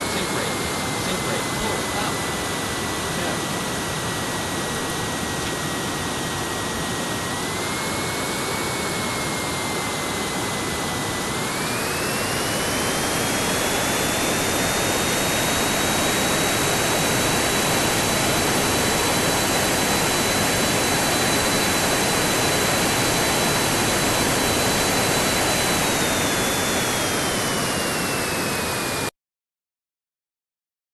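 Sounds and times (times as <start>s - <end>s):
jet engines rushing: 0.0s - 29.1s
thin high engine whine: 0.0s - 29.1s.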